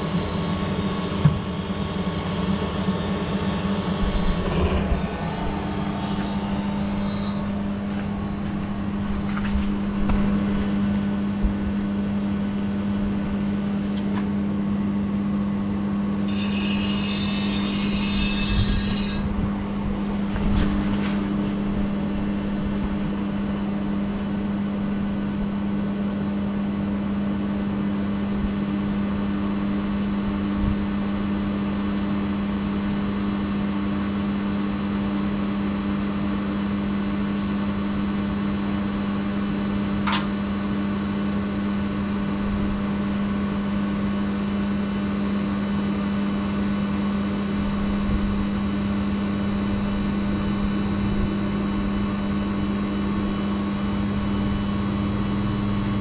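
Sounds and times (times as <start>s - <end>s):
loud low electrical hum: 0.0s - 56.0s
sharp click: 40.1s - 40.3s.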